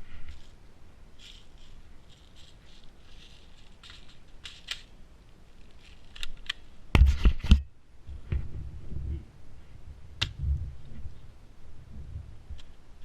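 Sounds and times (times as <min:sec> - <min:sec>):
rustling: 0:00.0 - 0:11.4.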